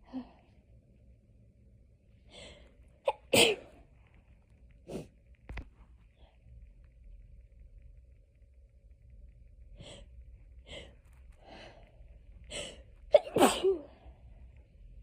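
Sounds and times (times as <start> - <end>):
person sneezing: 13.2 - 14.0.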